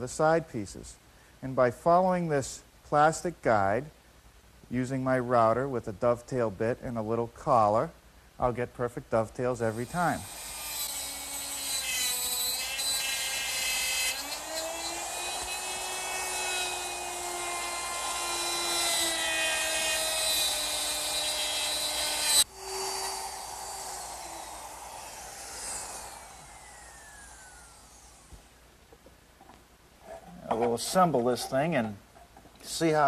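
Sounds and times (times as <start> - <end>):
router whining: 9.8 - 28.5.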